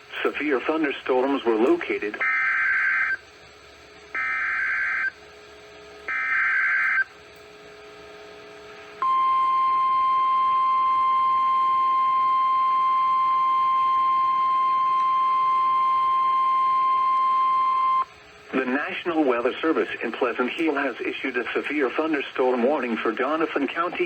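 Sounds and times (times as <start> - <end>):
steady warning alarm tone: 2.2 - 3.2, 4.2 - 5.2, 6.0 - 7.1, 9.0 - 18.1.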